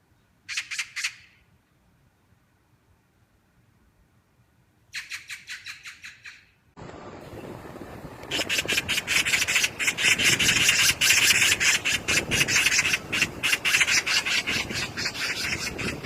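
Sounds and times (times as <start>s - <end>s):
magpie chattering rattle: 0.5s - 1.3s, 5.0s - 6.5s, 8.3s - 16.0s.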